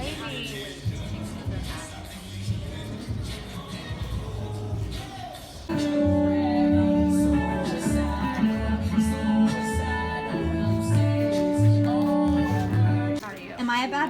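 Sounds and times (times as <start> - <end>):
guitar-led song with beat: 5.7 - 13.2.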